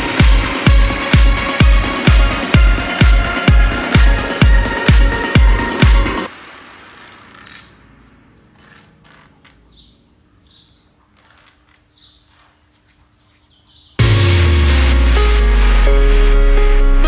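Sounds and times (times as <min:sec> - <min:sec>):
loud electronic music: 0:00.0 - 0:08.0, 0:14.0 - 0:17.0.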